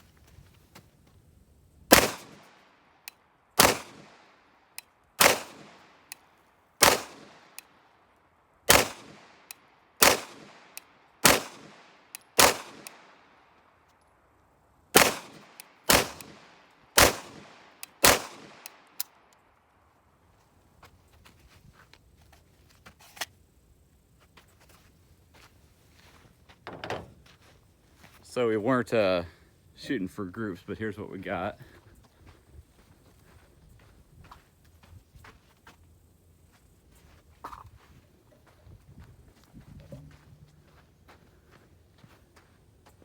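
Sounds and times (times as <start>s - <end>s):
pistol shots with echo: 1.9s - 2.5s, 3.6s - 4.2s, 5.2s - 6.1s, 6.8s - 7.6s, 8.7s - 13.2s, 15.0s - 18.8s.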